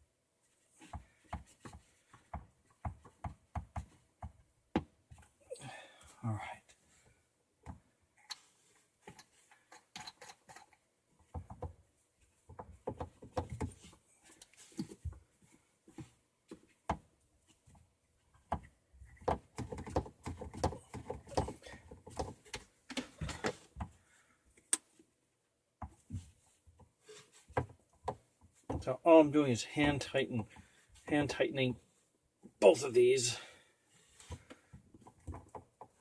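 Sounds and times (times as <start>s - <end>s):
plastic fittings clicking and tapping: 7.6s - 11.8s, 18.4s - 24.0s.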